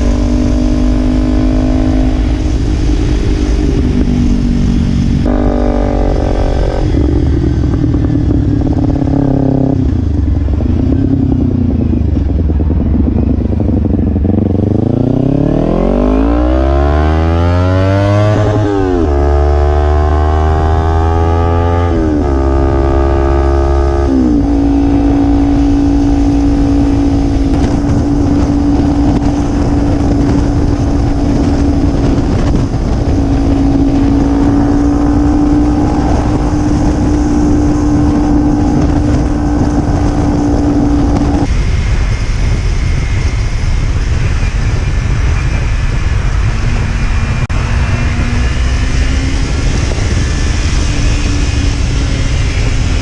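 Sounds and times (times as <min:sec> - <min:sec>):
motorcycle engine cruising: 0:00.0 - 0:53.0
wind rushing: 0:00.0 - 0:53.0.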